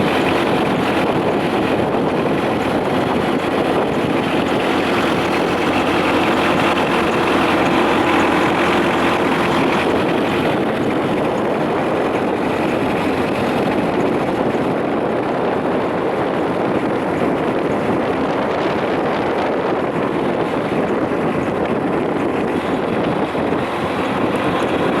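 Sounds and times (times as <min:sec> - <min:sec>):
boat running noise: 0:00.0 - 0:25.0
wind buffeting microphone: 0:00.0 - 0:25.0.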